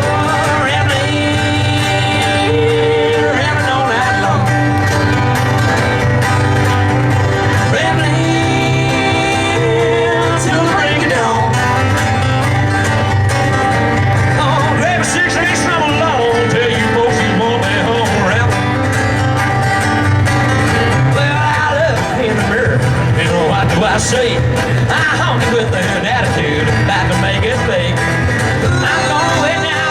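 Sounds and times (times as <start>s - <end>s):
bluegrass guitar and banjo music: 0.0s - 29.9s.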